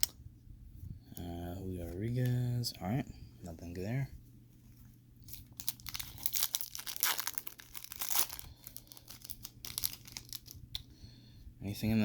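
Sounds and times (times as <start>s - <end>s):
wrapper tearing and crinkling: 5.3s - 10.6s.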